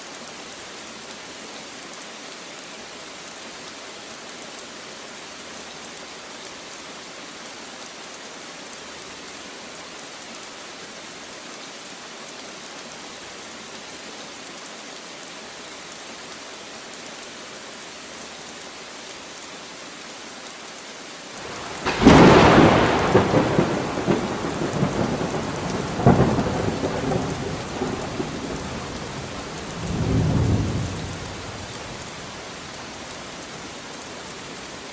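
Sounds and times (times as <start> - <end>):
steady rain falling: 0.0 - 34.9
thunder cracking and rumbling: 21.4 - 32.5.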